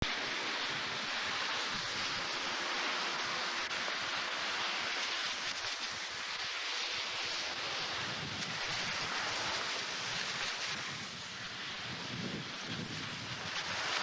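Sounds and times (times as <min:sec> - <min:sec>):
storm wind rushing: 0:07.7 - 0:14.0.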